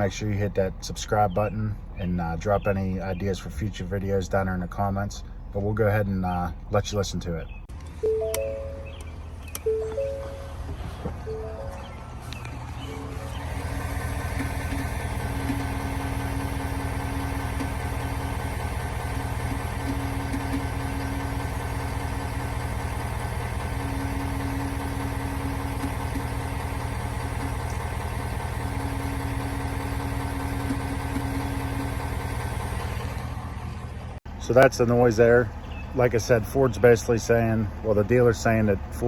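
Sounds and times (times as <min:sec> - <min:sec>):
diesel engine idling: 0:07.6 - 0:39.0
mid-pitched whine: 0:07.8 - 0:27.9.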